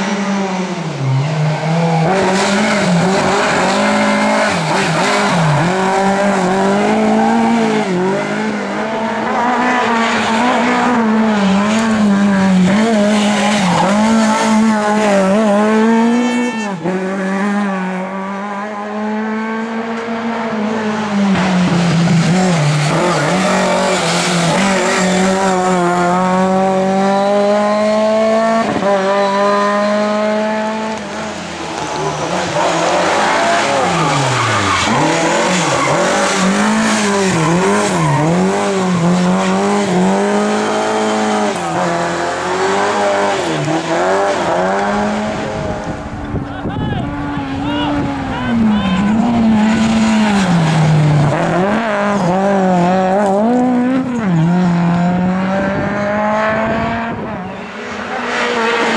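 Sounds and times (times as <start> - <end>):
race car engines revving: 0.0 - 58.9.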